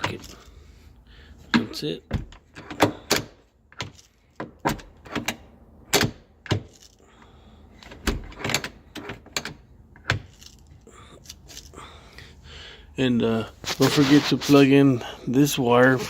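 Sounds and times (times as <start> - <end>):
latch clicks and knocks: 1.5 - 6.9, 7.8 - 10.4.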